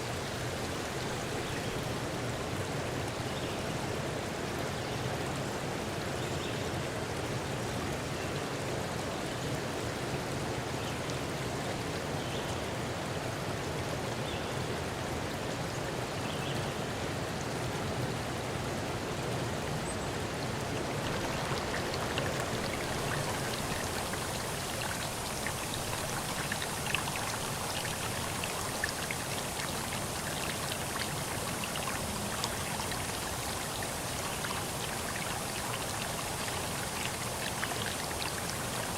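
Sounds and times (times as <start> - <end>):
running water: 16.8 - 38.9
drip-like ticks: 20.9 - 38.9.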